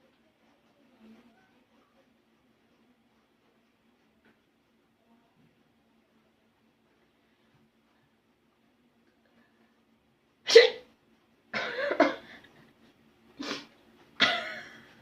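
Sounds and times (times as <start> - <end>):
person sneezing: 10.5 - 10.9, 13.4 - 13.7.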